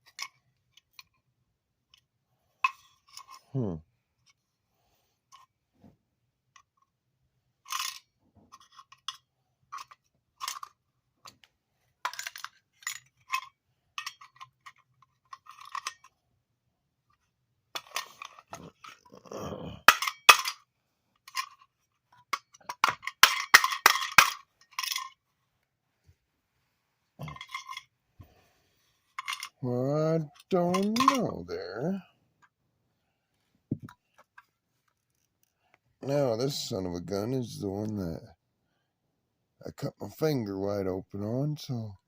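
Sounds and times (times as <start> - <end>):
metal parts clinking: 7.6 - 10.8, 12.0 - 16.2, 17.8 - 19.2, 19.8 - 20.6, 21.2 - 25.2, 27.2 - 27.9, 29.2 - 29.6, 30.3 - 31.4.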